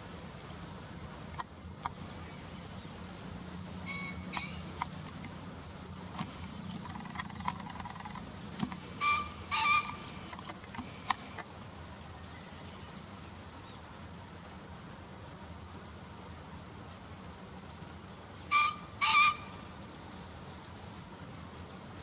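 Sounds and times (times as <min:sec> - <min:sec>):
pheasant crowing: 0:03.8 - 0:04.9, 0:06.2 - 0:11.4, 0:18.5 - 0:19.6.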